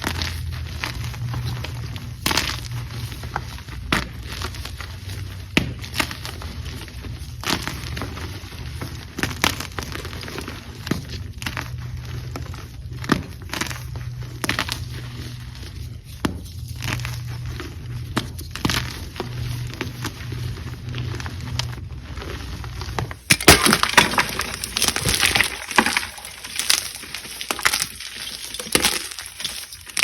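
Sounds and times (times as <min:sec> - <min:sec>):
low steady hum: 0:00.0 - 0:30.0
chalk crunching and snapping: 0:23.3 - 0:30.0.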